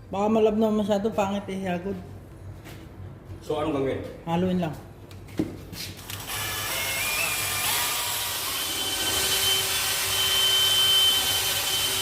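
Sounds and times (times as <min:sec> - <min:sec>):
power drill mixing paddle whine: 0:06.0 - 0:12.0.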